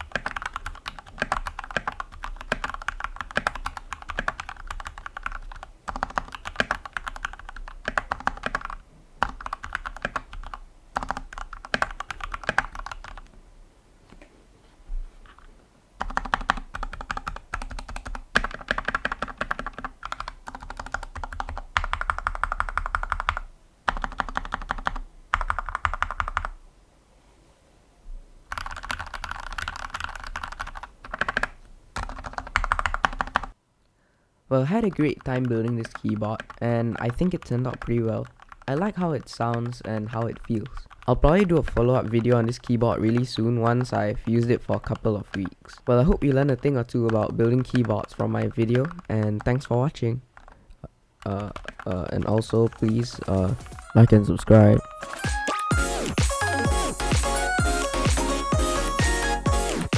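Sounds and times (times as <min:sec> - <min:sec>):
typing on mechanical keyboard: 0:00.0 - 0:13.3, 0:15.3 - 0:26.6, 0:28.5 - 0:33.6, 0:35.2 - 0:41.8, 0:47.0 - 0:49.7, 0:50.4 - 0:50.6, 0:51.2 - 0:53.8.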